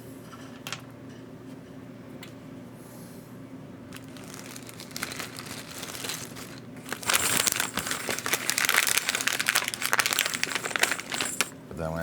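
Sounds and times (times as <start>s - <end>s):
faint hum: 0.0s - 12.0s
plastic packaging crinkling: 3.9s - 11.6s.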